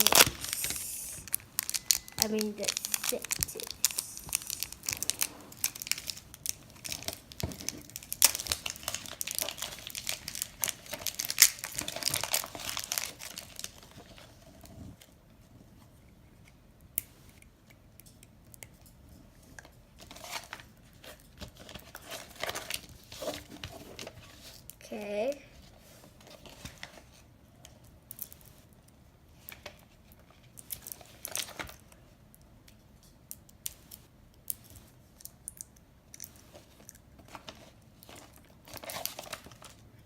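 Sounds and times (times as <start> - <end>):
plastic packaging crinkling and tearing: 0.0 - 14.6, 20.0 - 24.7, 29.4 - 31.9, 36.2 - 39.9.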